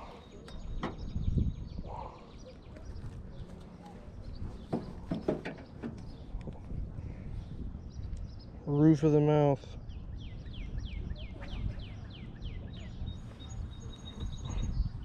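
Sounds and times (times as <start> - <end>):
sharp knocks and clicks: 4.7 - 6.1.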